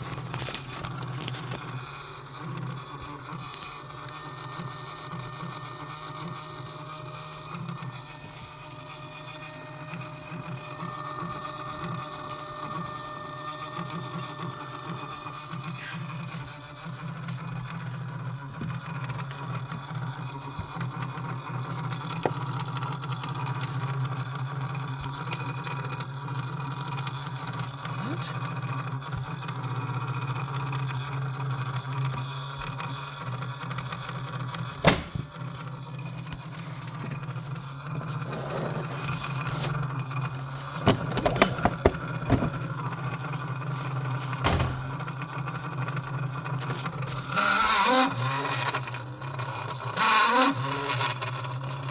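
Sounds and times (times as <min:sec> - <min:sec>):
steady mechanical hum: 0:32.2 - 0:47.5.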